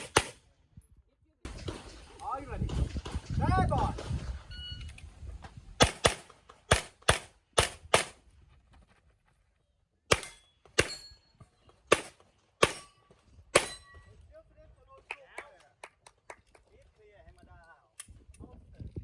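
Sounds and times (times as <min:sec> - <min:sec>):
handgun shots: 0:00.0 - 0:00.4, 0:05.8 - 0:08.2, 0:10.1 - 0:11.0, 0:11.9 - 0:12.9, 0:13.6 - 0:13.8.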